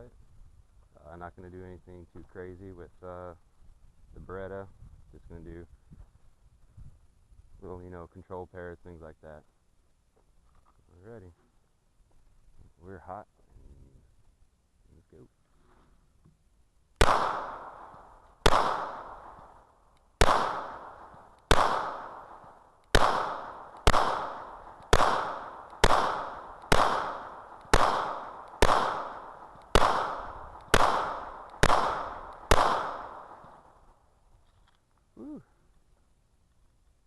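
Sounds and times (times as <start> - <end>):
pistol shots with ringing echo: 17.0 - 33.8.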